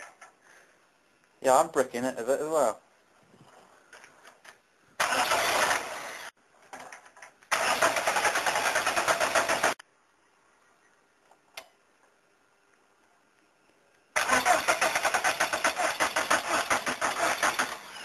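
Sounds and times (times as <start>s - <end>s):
starter motor cranking engine: 5.0s - 6.4s, 7.5s - 9.8s, 14.2s - 18.0s.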